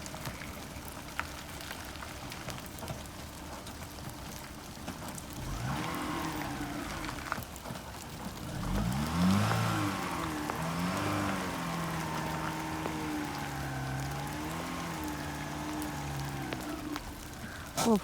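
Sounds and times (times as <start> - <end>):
raindrops ticking: 0.0 - 18.0
steady rain: 0.0 - 18.0
car engine revving: 5.4 - 7.8, 8.4 - 17.8.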